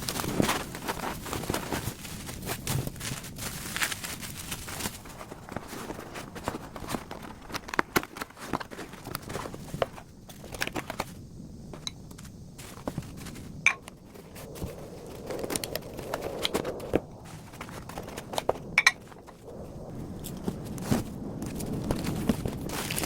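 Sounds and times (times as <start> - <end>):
household objects clicking and knocking: 13.7 - 14.0, 17.9 - 19.4.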